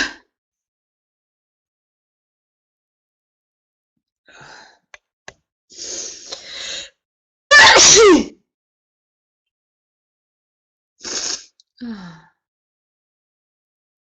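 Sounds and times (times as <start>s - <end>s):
noisy intake of breath: 5.8s - 6.9s, 11.0s - 11.5s
woman sneezing: 7.5s - 8.3s.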